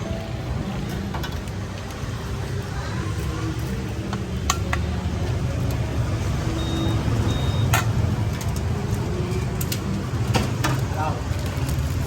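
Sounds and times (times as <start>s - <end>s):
street traffic rumble: 0.0s - 12.0s
short high beep: 6.6s - 7.8s.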